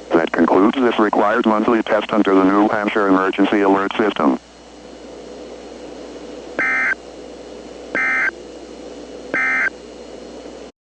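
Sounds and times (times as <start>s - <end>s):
steady background hiss: 0.0s - 10.7s
raspy digital data bursts: 6.6s - 7.0s, 7.9s - 8.4s, 9.3s - 9.7s.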